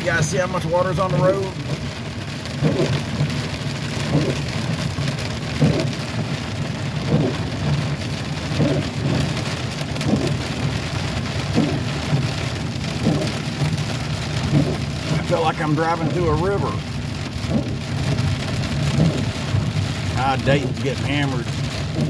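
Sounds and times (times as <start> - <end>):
heavy rain on truck: 0.0 - 22.0
windshield wipers squeaking: 0.1 - 22.0.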